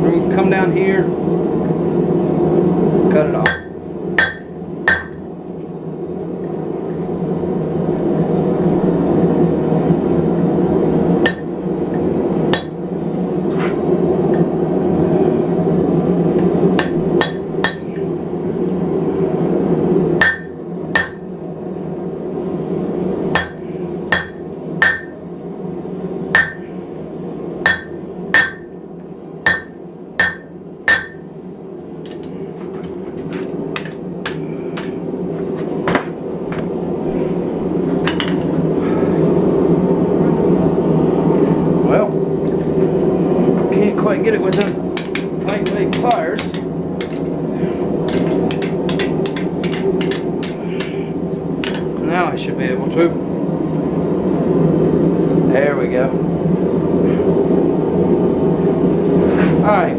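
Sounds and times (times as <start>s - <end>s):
hammer striking steel on anvil: 3.4s - 5.2s, 11.2s - 11.5s, 12.5s - 12.9s, 16.8s - 18.1s, 20.2s - 21.4s, 23.4s - 25.3s, 26.4s - 26.8s, 27.7s - 28.8s, 29.5s - 31.4s, 33.8s - 35.0s, 44.5s - 47.1s, 48.1s - 51.0s.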